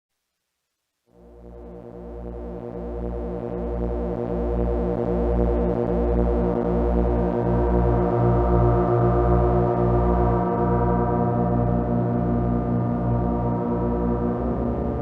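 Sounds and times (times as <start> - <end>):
low synthesizer drone: 1.2 - 15.0
pulsing bass: 1.4 - 15.0.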